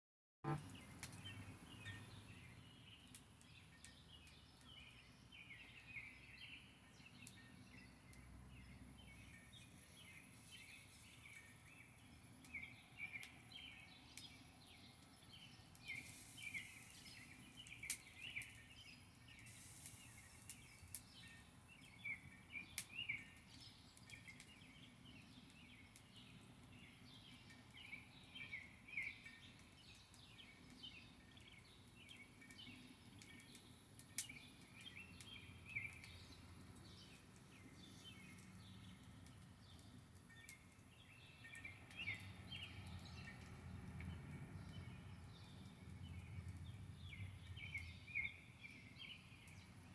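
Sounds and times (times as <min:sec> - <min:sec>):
small birds chirping: 0:00.4 - 0:49.9
sharp crackles: 0:09.3 - 0:21.5, 0:31.4 - 0:49.9.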